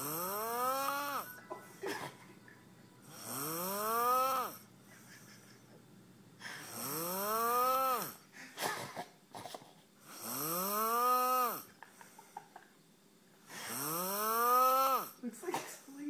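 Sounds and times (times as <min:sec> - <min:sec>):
man snoring: 0:00.0 - 0:01.4, 0:03.0 - 0:04.7, 0:06.6 - 0:08.2, 0:10.0 - 0:11.8, 0:13.5 - 0:15.2.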